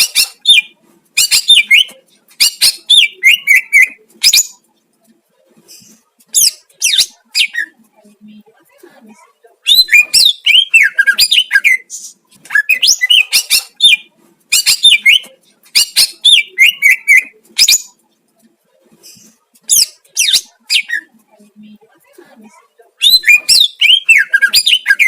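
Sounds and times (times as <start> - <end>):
bird singing whistles and chirps: 23.0 - 25.0.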